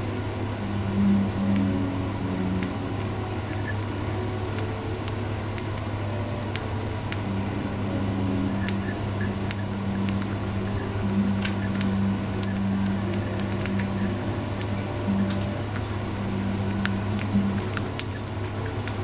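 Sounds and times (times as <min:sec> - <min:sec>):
steady low hum: 0:00.0 - 0:19.0
bird crunching food: 0:08.2 - 0:19.0.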